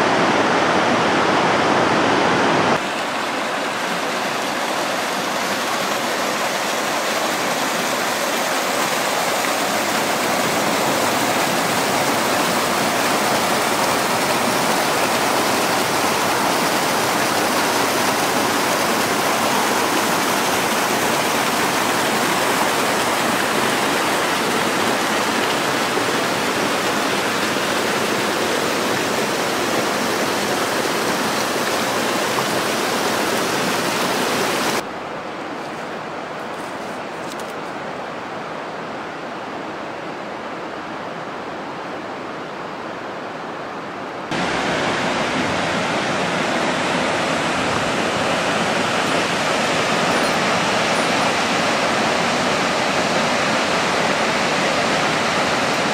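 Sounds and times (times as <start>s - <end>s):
rushing water: 0.0s - 55.9s.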